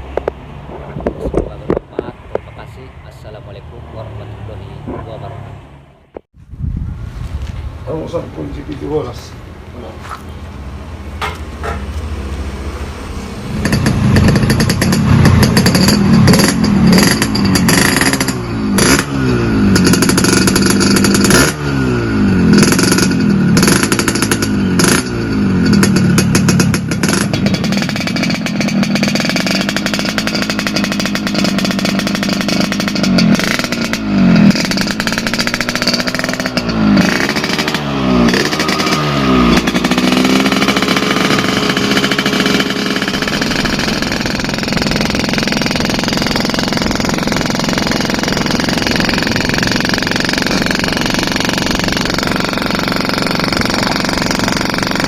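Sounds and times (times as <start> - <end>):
two-stroke motorcycle engine revving: 11.2 - 55.0.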